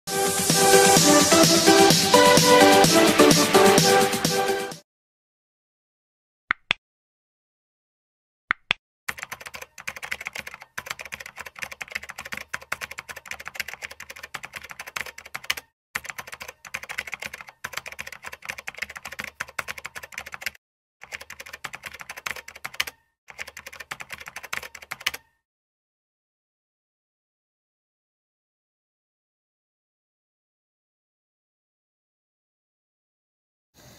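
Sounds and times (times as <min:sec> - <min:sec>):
fast typing on keyboard: 0:09.1 - 0:25.3.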